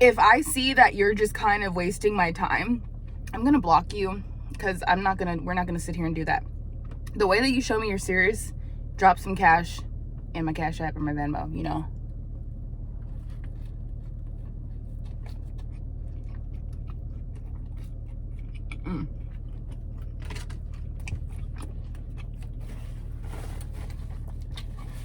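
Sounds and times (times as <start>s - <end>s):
steady low hum: 0.0s - 25.0s
person chewing food: 12.9s - 25.0s
person humming mm: 18.8s - 19.2s.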